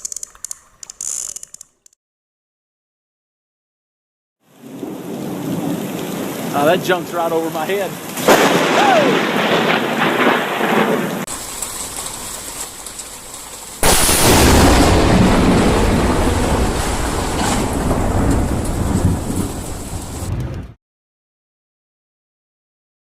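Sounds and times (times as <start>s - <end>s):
rain: 4.4s - 20.8s
thunder rumbling: 4.6s - 20.8s
loud thunderclap: 8.1s - 11.6s, 13.8s - 20.8s.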